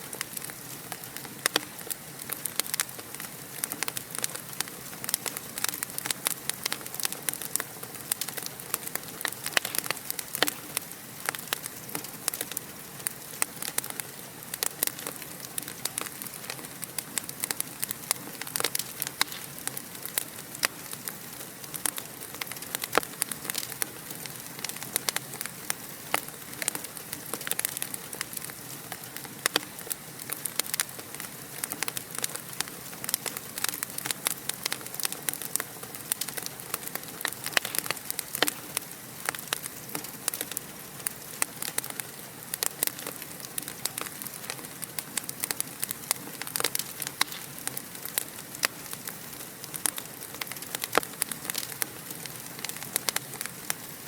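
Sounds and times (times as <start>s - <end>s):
fire crackling: 0.0s - 54.0s.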